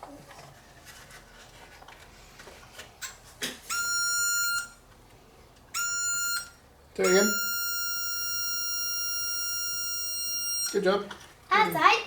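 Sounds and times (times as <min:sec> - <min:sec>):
circuit tester beep: 0:03.7 - 0:04.8, 0:05.8 - 0:10.8.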